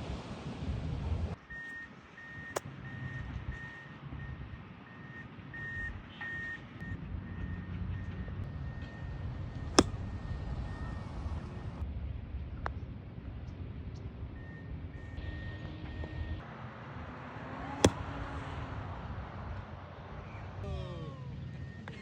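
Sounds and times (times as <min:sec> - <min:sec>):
reversing alarm beeps: 0:01.5 - 0:11.0, 0:14.4 - 0:16.4
golf club striking ball: 0:09.6 - 0:10.3, 0:17.8 - 0:18.2.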